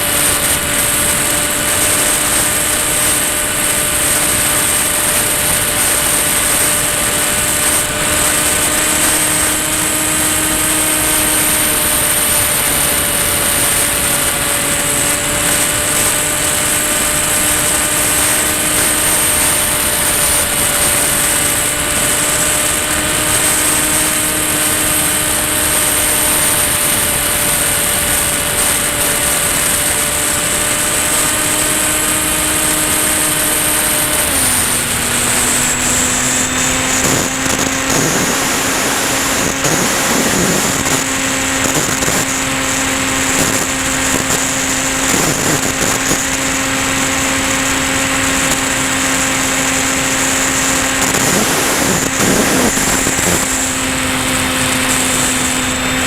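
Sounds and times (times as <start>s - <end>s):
model plane motor droning whine: 0.0s - 56.0s.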